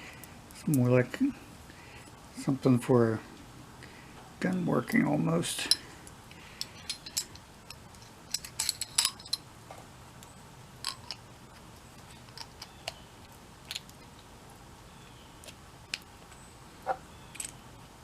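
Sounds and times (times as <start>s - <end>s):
small metal tools clicking: 6.6s - 9.4s, 10.8s - 11.2s, 17.3s - 17.6s.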